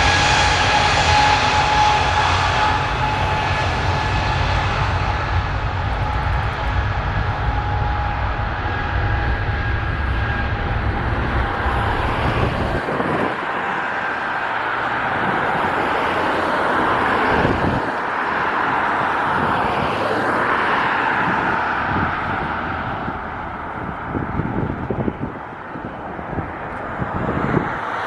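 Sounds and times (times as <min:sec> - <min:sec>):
low rumble: 0:00.0 - 0:14.6
jet engines rushing: 0:00.0 - 0:28.0.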